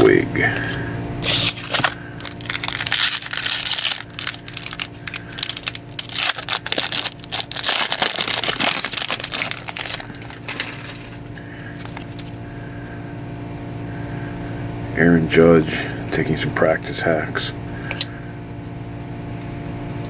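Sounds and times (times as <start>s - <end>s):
steady low hum: 0.0s - 20.0s
cards and foil wrapper crinkling: 0.6s - 12.4s.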